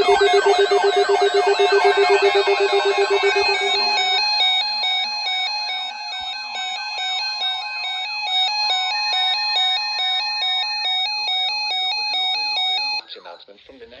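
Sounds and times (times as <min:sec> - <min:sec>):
two-pitch alert tone: 0:00.0 - 0:07.9
warbling siren-like wail: 0:00.0 - 0:11.3.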